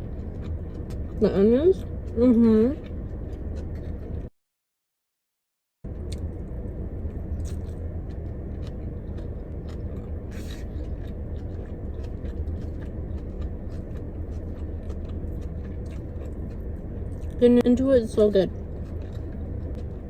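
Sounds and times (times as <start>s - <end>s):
chewing food: 0.0s - 4.3s, 5.9s - 20.0s
low car cabin rumble: 5.9s - 20.0s.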